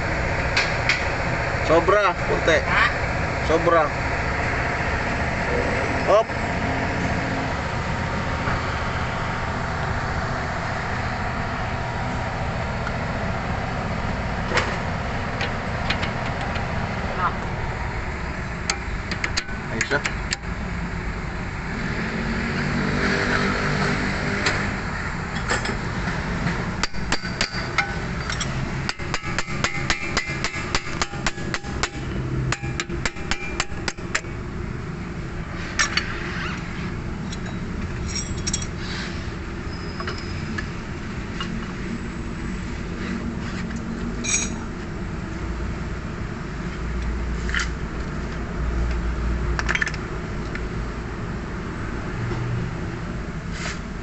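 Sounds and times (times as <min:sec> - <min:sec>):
sharp metallic clicks: 0:18.6 - 0:20.5
hand tools clinking: 0:26.9 - 0:30.3, 0:37.3 - 0:38.8, 0:44.2 - 0:44.6.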